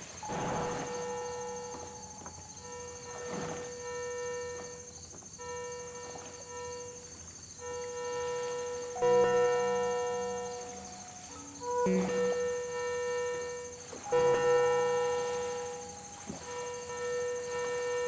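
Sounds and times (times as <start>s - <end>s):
breathy hiss: 0.0s - 1.6s
reedy synthesizer tones: 9.2s - 18.0s.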